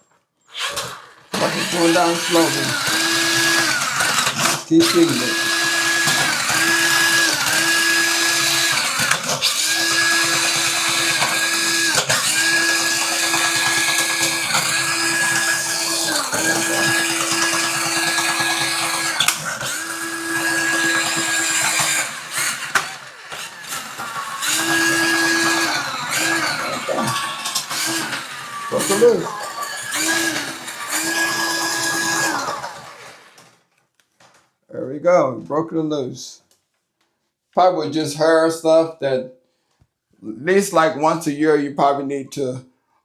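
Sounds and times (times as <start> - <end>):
drain auger motor running: 0.5 - 33.6.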